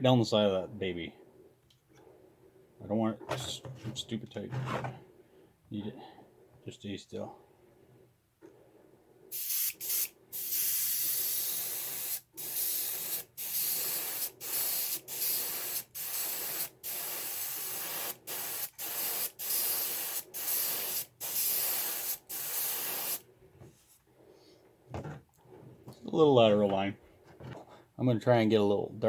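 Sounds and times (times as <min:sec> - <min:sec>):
airbrush spraying in bursts: 0:09.3 - 0:23.2.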